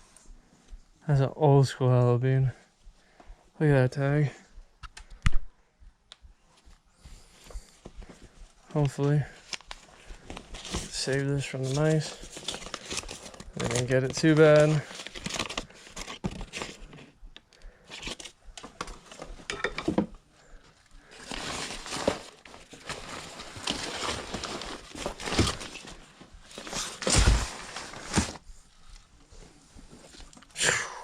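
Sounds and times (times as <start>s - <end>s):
clothing and bags rustling: 6.5s - 17.2s, 20.3s - 30.4s.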